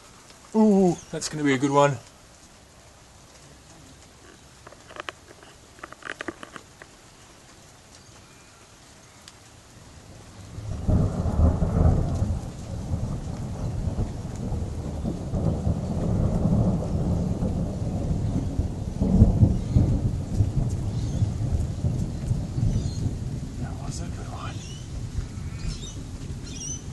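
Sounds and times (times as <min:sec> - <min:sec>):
rolling thunder: 0:10.1 - 0:26.9.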